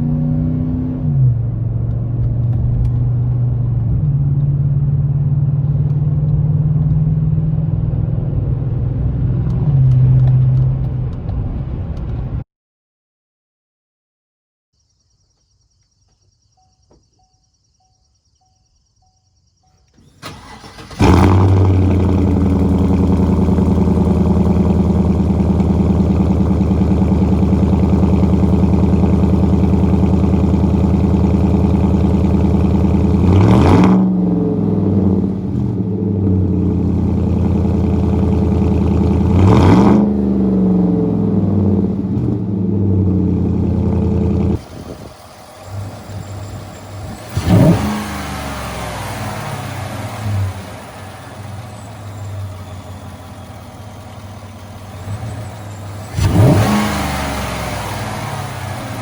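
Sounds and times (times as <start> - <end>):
engine revving: 0.0 - 11.3, 20.0 - 59.0
pickup engine starting and idling: 19.8 - 59.0.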